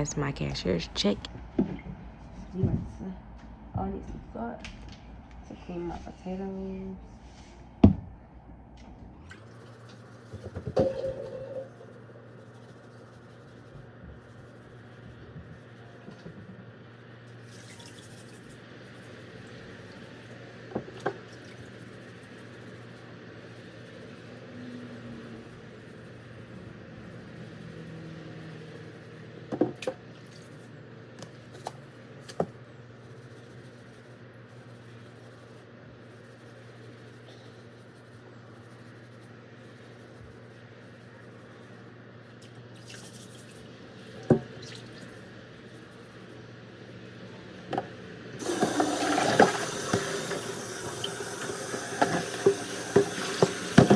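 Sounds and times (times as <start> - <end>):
low steady hum: 0.0 - 21.8.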